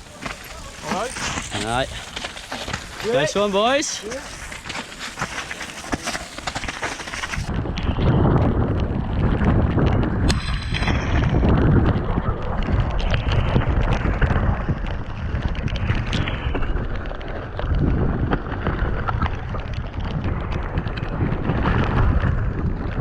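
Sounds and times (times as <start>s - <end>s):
wind buffeting microphone: 0.0s - 23.0s.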